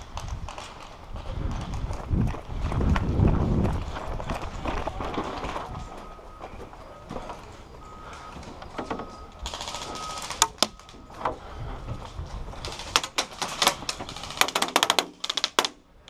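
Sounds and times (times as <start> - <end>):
airsoft gun bursts: 9.4 - 10.7, 12.7 - 15.8.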